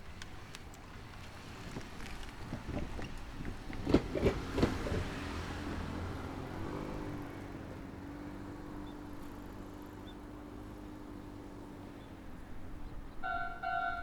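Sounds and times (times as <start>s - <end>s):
train rumble: 0.0s - 6.8s, 12.3s - 14.0s
train wheels knocking on rail joints: 2.4s - 5.5s.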